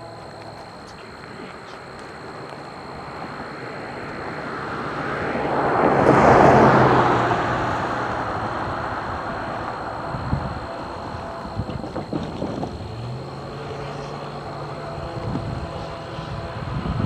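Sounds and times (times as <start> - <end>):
low engine hum: 0.0 - 17.0
train passing: 0.0 - 17.0.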